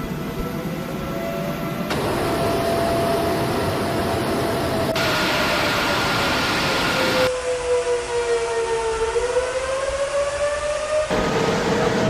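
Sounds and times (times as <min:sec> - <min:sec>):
high engine whine: 0:00.0 - 0:07.8, 0:11.0 - 0:12.0
jet engines roaring: 0:00.0 - 0:12.0.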